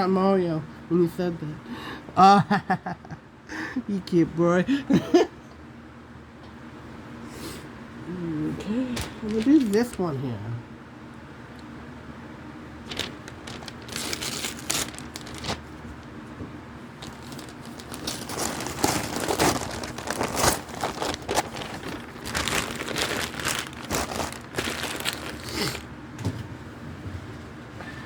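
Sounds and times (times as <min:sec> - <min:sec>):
packaging crinkling and tearing: 0:09.0 - 0:10.0, 0:12.8 - 0:16.2, 0:17.0 - 0:25.9.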